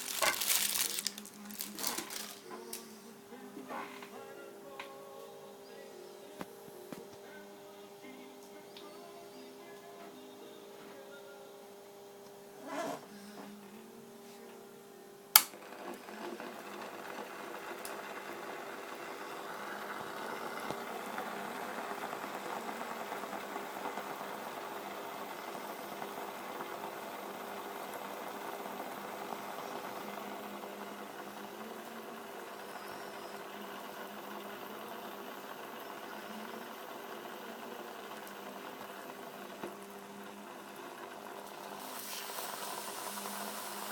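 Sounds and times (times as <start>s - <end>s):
water crackling and fizzing: 0.0s - 2.4s
steady hum: 0.0s - 43.9s.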